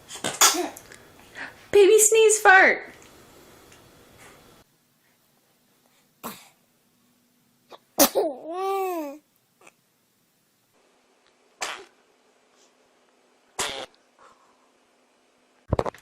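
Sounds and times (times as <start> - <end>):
small children sneezing: 7.7 - 8.4, 11.6 - 11.9, 13.6 - 13.9.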